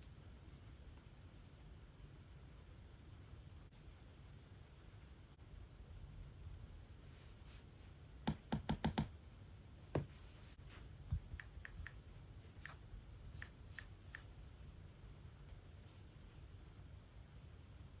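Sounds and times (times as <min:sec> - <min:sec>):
stylus tapping on tablet: 0:08.2 - 0:09.2, 0:11.1 - 0:12.0.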